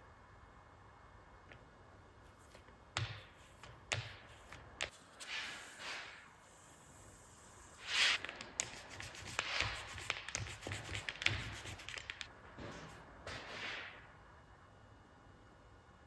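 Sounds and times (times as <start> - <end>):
sharp clicks and taps: 8.2 - 12.3.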